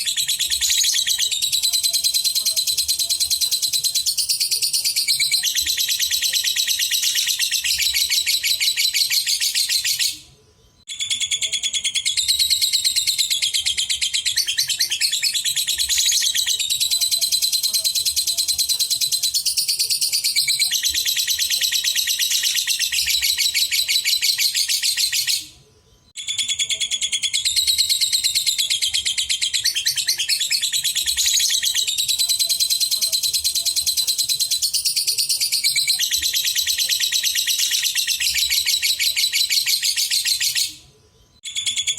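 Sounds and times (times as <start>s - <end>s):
lovebird chattering trill: 0.0s - 10.2s, 26.2s - 40.8s.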